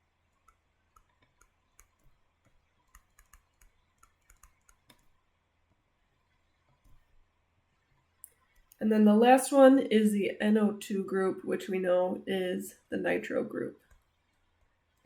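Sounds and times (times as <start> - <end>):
faint irregular clicking: 0.0 - 5.2, 7.8 - 8.8, 13.8 - 15.0.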